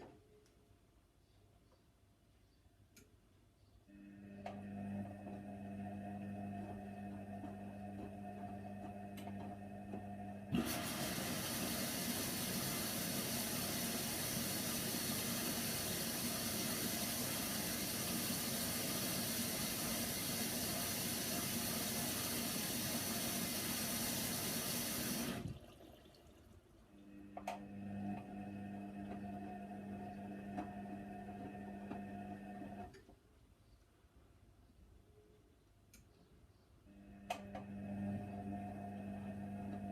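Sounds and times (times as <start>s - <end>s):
washing machine electric hum: 3.8s - 33.0s, 36.8s - 39.9s
water rushing into drum: 10.6s - 26.5s.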